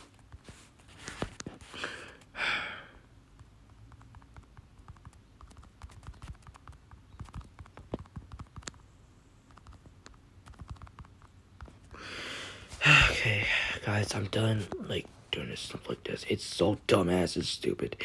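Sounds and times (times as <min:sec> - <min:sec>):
typing on a computer keyboard: 0:03.3 - 0:11.8.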